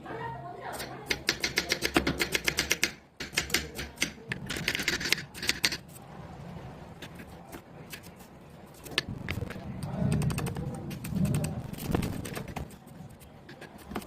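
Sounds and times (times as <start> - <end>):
kitchen utensil tapping: 0.8 - 5.8.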